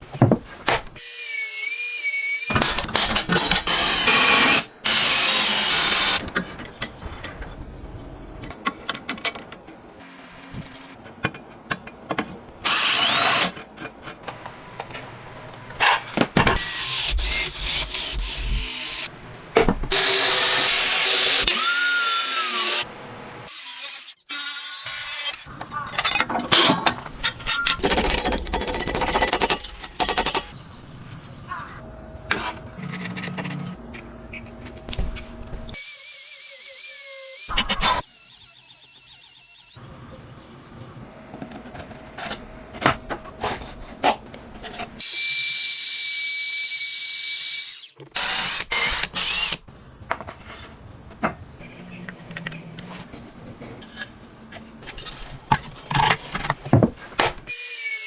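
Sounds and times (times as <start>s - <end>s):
power drill on wood: 2.0s - 6.2s, 12.6s - 13.6s, 19.9s - 22.8s, 45.0s - 49.6s.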